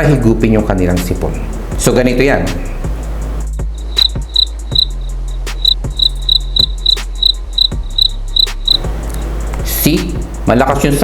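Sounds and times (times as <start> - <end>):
steady low hum: 2.5 - 10.6
cricket chirping: 3.5 - 9.4.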